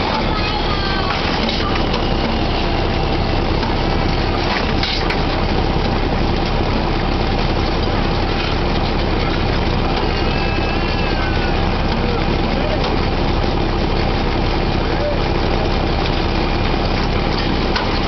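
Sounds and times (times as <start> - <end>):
drilling rig engines droning: 0.0 - 18.0
faint gliding squeal: 10.0 - 11.7.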